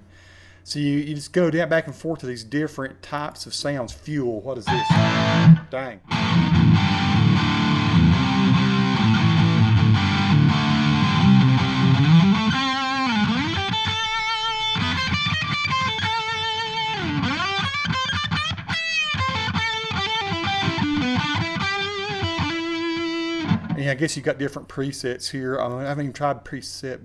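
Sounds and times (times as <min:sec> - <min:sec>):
distorted electric guitar: 0:04.7 - 0:23.9.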